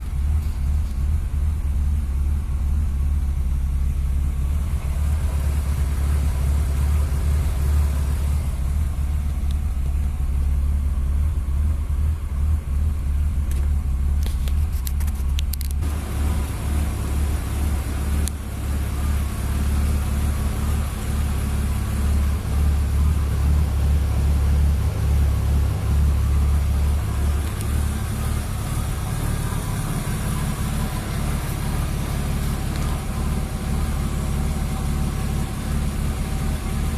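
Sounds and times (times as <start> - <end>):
car engine idling roughly: 0.0 - 36.9
clicks: 27.3 - 27.8.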